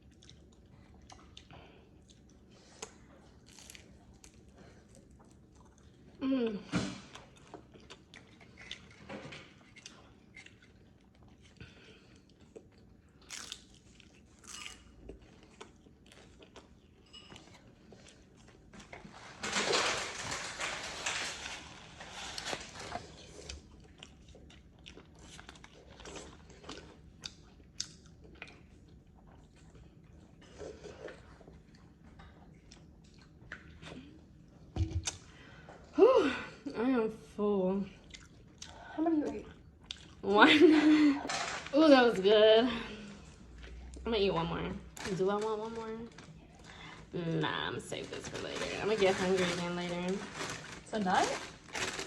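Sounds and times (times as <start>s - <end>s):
person chewing crunchy food: 0.0s - 6.2s, 7.1s - 19.1s, 22.3s - 33.8s, 38.0s - 40.2s.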